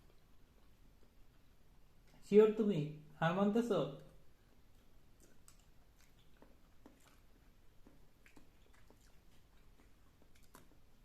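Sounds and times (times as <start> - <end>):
person chewing: 0.0 - 2.2, 4.3 - 11.0.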